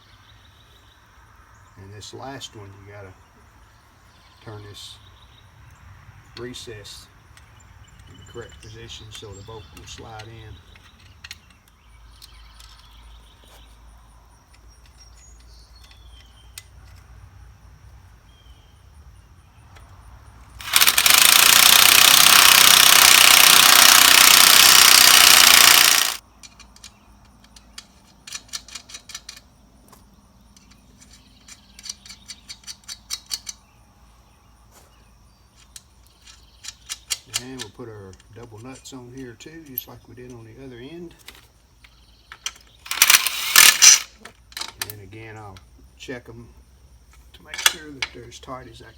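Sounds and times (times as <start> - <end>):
ratchet wrench clicking: 20.6 - 29.4, 42.9 - 44.1.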